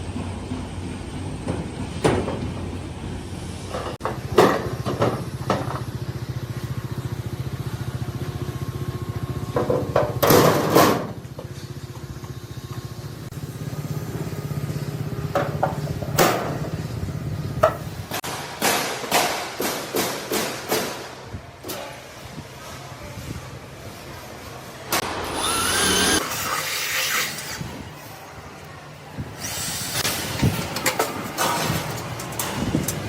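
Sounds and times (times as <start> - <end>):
small engine running: 11.5 - 15.8, 25.0 - 26.6.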